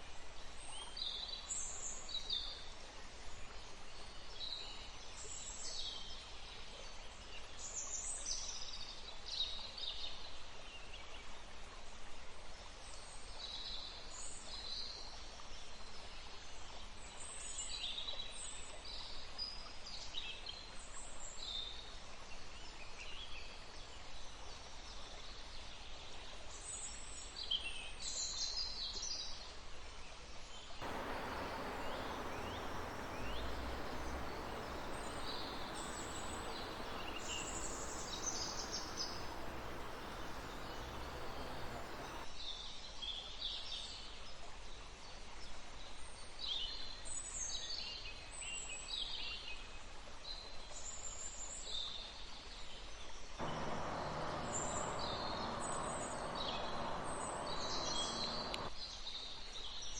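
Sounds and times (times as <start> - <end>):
river rushing: 30.8 - 42.2, 53.4 - 58.7
small birds chirping and trilling: 30.8 - 42.2, 53.4 - 58.7.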